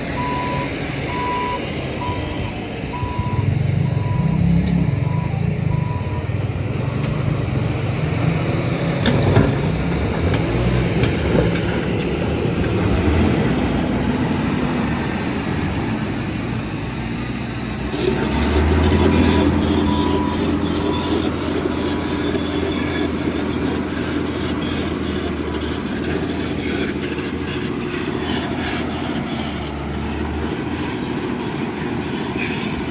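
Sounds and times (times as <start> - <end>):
heavy machinery diesel engine: 0.0 - 32.9
reversing alarm beeping: 0.1 - 6.5, 19.2 - 21.5.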